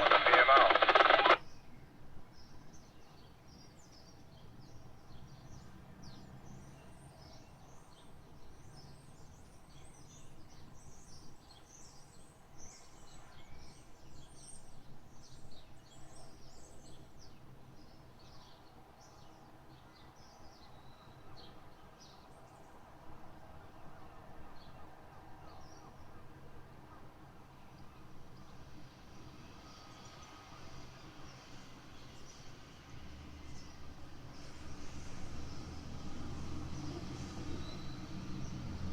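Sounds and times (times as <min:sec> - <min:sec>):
low background noise: 0:00.0 - 0:05.0.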